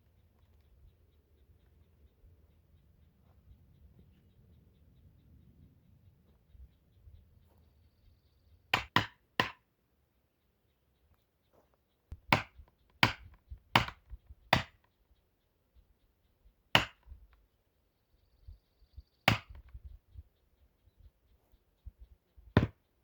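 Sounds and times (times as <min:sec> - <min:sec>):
hammer striking felling wedge: 0:08.8 - 0:09.6, 0:12.2 - 0:14.8, 0:16.8 - 0:17.1, 0:19.3 - 0:19.7.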